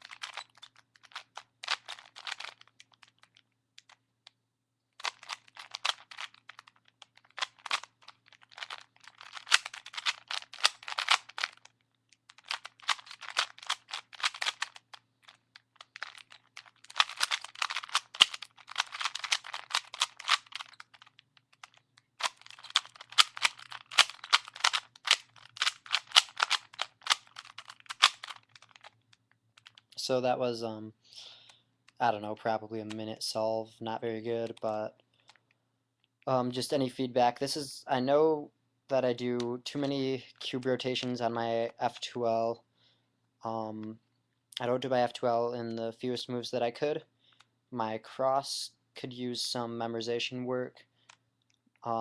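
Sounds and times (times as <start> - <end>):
puzzle cube clicking: 0.0 - 4.4, 5.0 - 30.0.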